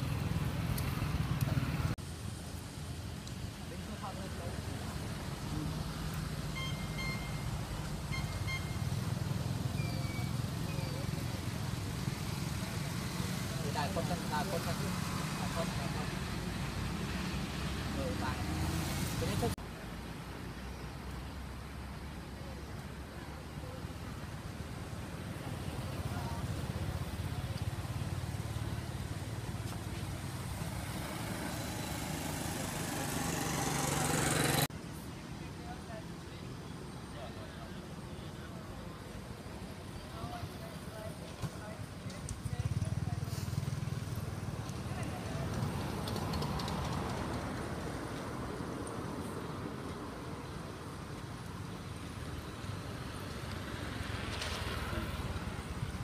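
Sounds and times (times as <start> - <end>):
passing motor vehicle: 3.6 - 19.6, 23.2 - 34.8, 38.4 - 56.0
short electronic beeps: 6.5 - 9.0.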